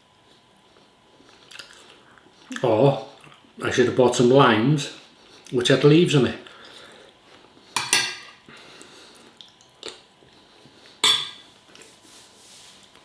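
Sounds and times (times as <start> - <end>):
cutlery clinking on a plate: 7.8 - 8.4, 11.0 - 11.5.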